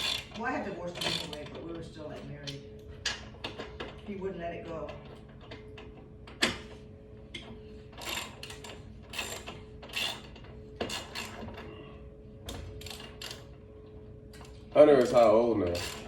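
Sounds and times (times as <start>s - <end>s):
hand tools and metal hardware clicking: 14.4s - 16.0s.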